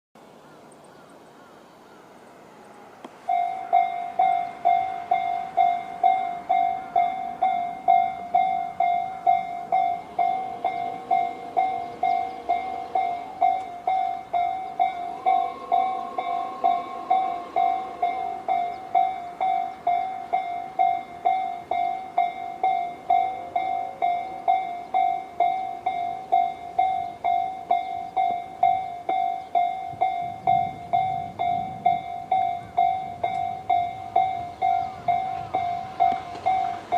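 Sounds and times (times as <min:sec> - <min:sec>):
electronic level crossing bell: 0:03.3 - 0:36.9.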